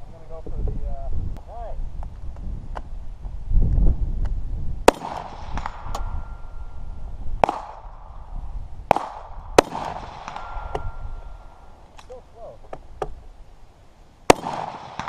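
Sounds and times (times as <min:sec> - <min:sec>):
rifle shots with echo: 0:04.8 - 0:06.8, 0:07.4 - 0:08.3, 0:08.9 - 0:11.7, 0:14.3 - 0:15.0.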